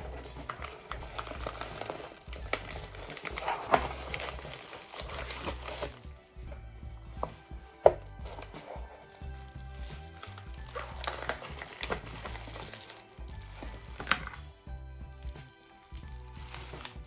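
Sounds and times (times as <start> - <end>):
background music: 0.0 - 17.0
cardboard box and packing crinkling: 0.0 - 17.0.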